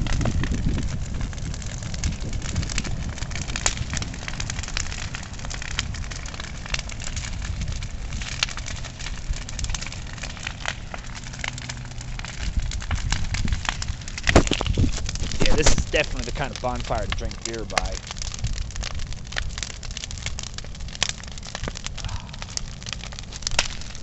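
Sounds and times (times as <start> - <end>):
bonfire crackling: 0.0 - 24.0
low fire rumble: 0.0 - 24.0
sharp pops: 12.9 - 18.1.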